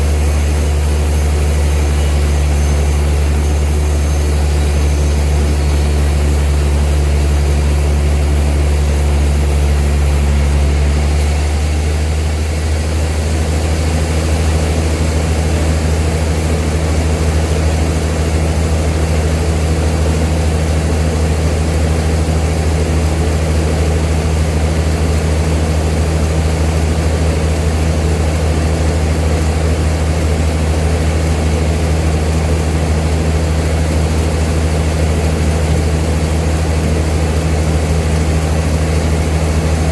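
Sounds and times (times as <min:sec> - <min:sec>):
sawmill machinery droning: 0:00.0 - 0:39.9.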